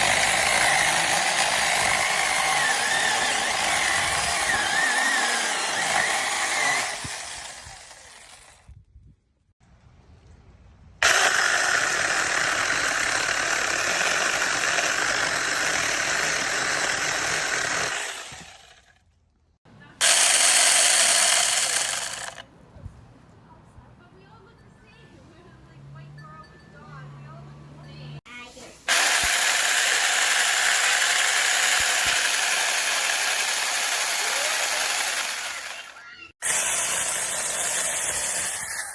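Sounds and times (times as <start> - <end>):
electric chainsaw running: 0.0 - 8.6, 11.0 - 18.9, 20.0 - 22.4, 28.9 - 38.9.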